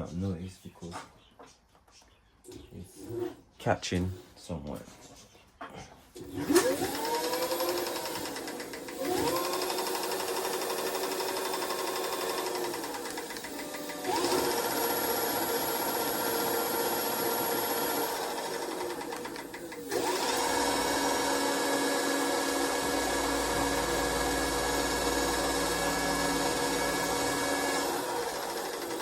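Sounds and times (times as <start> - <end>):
electric motor whining: 6.3 - 29.0.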